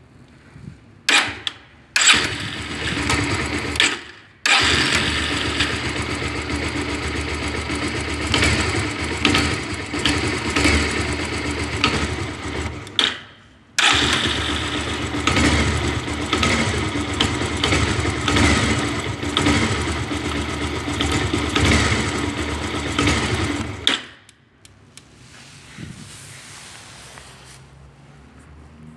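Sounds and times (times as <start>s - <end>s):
engine throttle blips: 1.1s - 13.2s, 13.8s - 24.1s
odd engine noise: 1.1s - 13.2s, 13.8s - 24.1s
motorcycle engine running: 2.0s - 13.0s, 13.8s - 23.9s.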